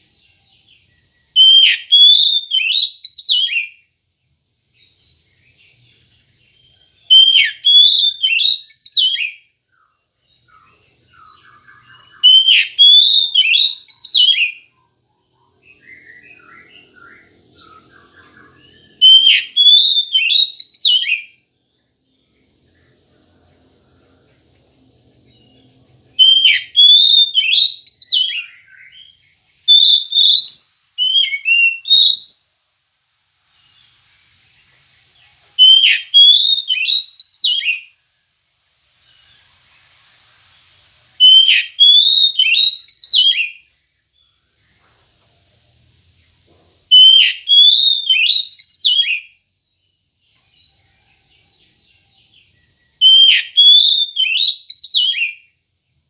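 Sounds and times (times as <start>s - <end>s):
bird singing whistled phrases: 0.0s - 3.9s, 4.8s - 21.4s, 25.4s - 32.6s, 34.8s - 38.0s, 41.2s - 44.4s, 46.9s - 55.6s.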